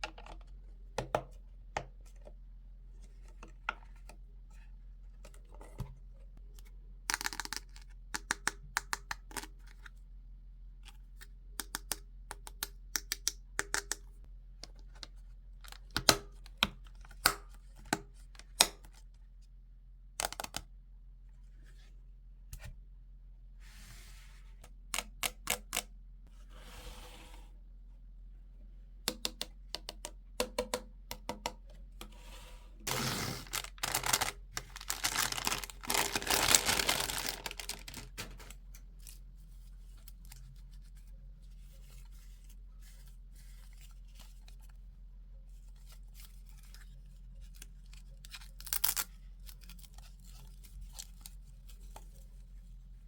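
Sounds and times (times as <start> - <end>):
packaging rustles: 32.9 - 38.6.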